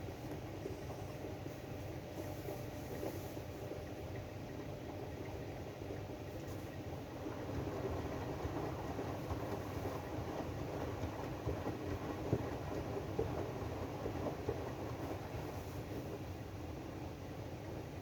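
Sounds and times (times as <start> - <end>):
washing machine drum rumbling: 7.1 - 15.6.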